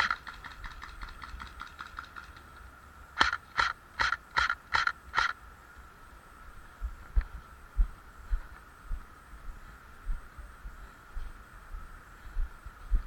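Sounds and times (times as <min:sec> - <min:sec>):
airsoft gun shots: 0:03.2 - 0:05.4.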